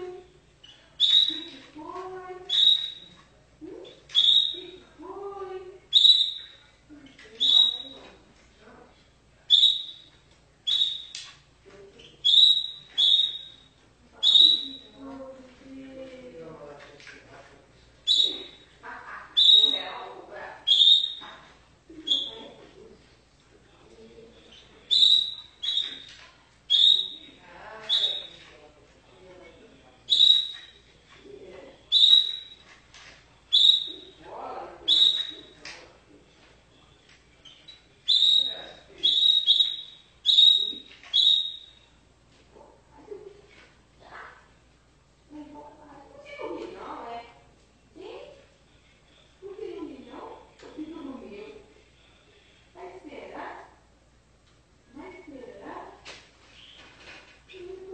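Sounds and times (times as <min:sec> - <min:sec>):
canary singing: 0:00.0 - 0:04.9, 0:05.8 - 0:08.2, 0:09.5 - 0:11.4, 0:12.0 - 0:15.2, 0:18.0 - 0:22.9, 0:24.2 - 0:28.5, 0:30.0 - 0:35.7, 0:36.7 - 0:42.0.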